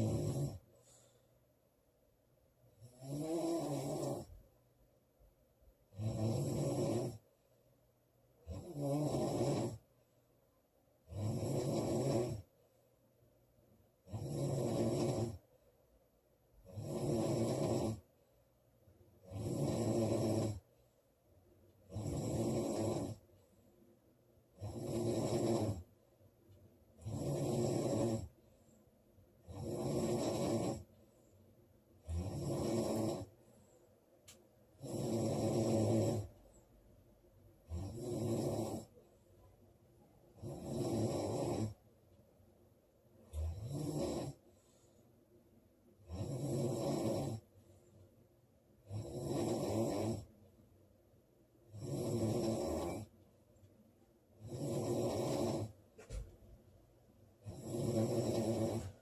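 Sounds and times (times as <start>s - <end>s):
woman snoring loudly: 0.0s - 0.6s, 2.8s - 4.4s, 5.9s - 7.2s, 8.4s - 9.8s, 11.1s - 12.5s, 14.0s - 15.4s, 16.6s - 18.1s, 19.2s - 20.6s, 21.9s - 23.2s, 24.6s - 25.9s, 27.0s - 28.4s, 29.4s - 30.9s, 32.0s - 33.3s, 34.8s - 36.3s, 37.7s - 38.9s, 40.4s - 41.8s, 43.3s - 44.4s, 46.0s - 47.4s, 48.9s - 50.3s, 51.7s - 53.1s, 54.4s - 55.8s, 57.4s - 59.0s.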